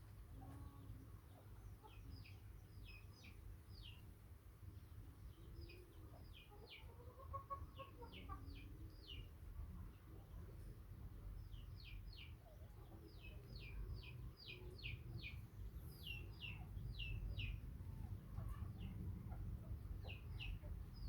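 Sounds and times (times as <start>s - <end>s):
faint bird chirping: 0.1s - 21.0s.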